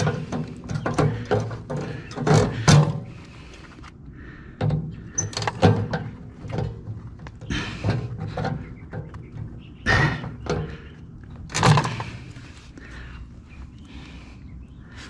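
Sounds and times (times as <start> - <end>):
metal knocks and clanks: 0.0 - 3.2, 4.6 - 12.4.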